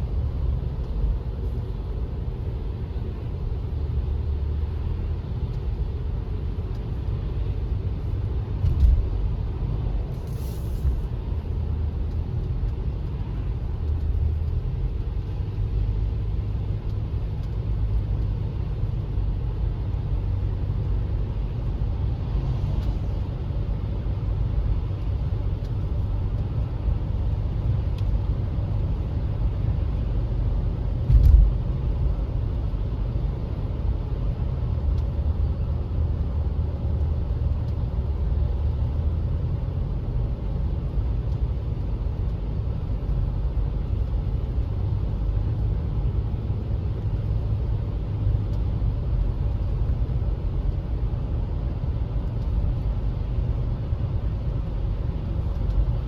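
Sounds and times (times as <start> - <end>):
road and engine rumble: 0.0 - 56.0
short thump: 31.0 - 31.6.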